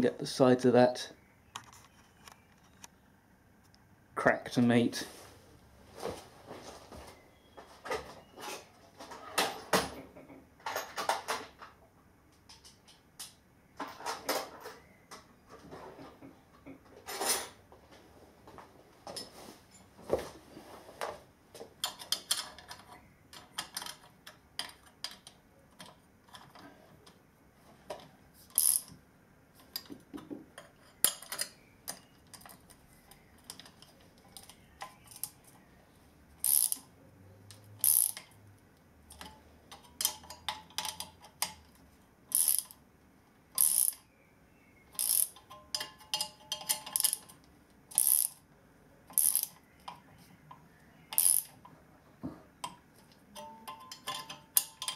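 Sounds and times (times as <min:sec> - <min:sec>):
metallic ratchet clicks: 0:36.4 - 0:36.9, 0:37.8 - 0:38.4, 0:42.3 - 0:42.8, 0:43.6 - 0:44.0, 0:44.9 - 0:47.3, 0:47.9 - 0:48.4, 0:49.1 - 0:49.6, 0:51.1 - 0:51.5.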